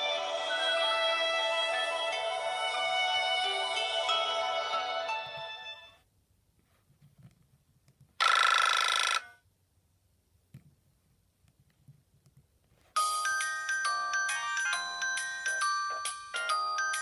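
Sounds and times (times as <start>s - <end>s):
chiming ringtone melody: 0.0s - 6.0s, 13.0s - 17.0s
phone ringtone: 8.2s - 9.4s, 13.0s - 17.0s.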